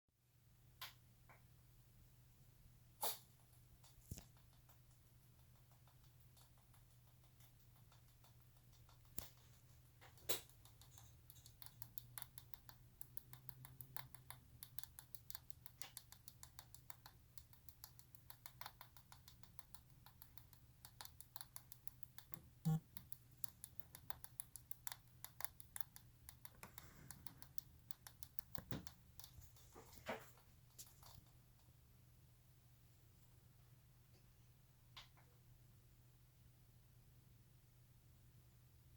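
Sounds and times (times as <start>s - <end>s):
monitor ticking clicks: 3.5s - 29.7s.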